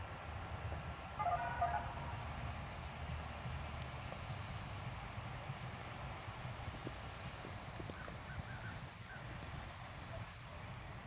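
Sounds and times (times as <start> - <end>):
wind rumbling on microphone: 0.0 - 11.0
faint distant bird calls: 6.8 - 9.4.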